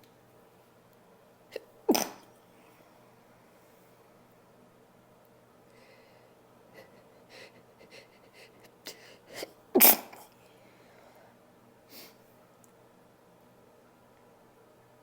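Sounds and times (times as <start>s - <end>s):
woman sneezing: 1.9s - 2.2s, 8.9s - 10.3s
sniff: 10.8s - 12.2s.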